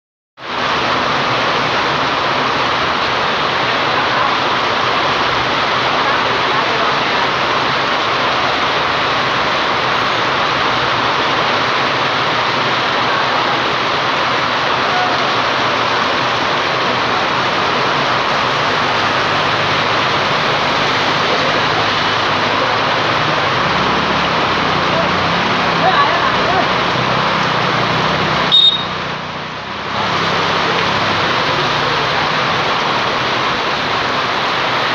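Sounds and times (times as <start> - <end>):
heavy rain pouring: 0.4 - 34.9.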